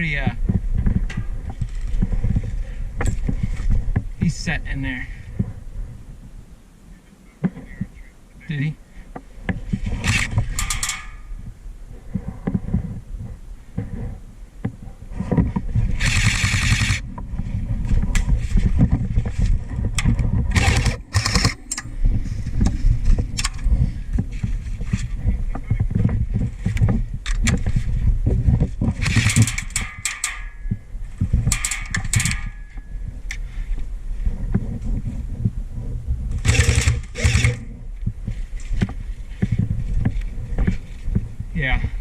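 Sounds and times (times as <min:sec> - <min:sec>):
steady low rumble: 0:00.0 - 0:42.0
sharp clicks: 0:29.0 - 0:30.6, 0:31.4 - 0:32.6.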